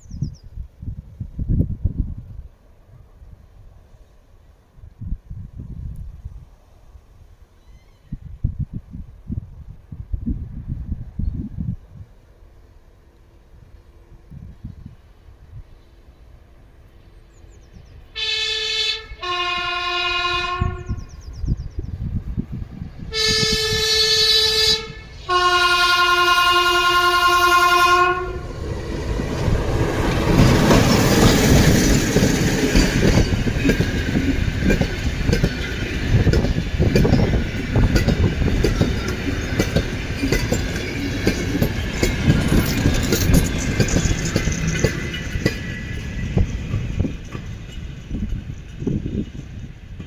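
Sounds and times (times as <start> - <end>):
train rumble: 1.2 - 50.0
locomotive horn blasts: 18.2 - 21.0, 23.1 - 28.5
wheels clattering on rails: 28.6 - 50.0.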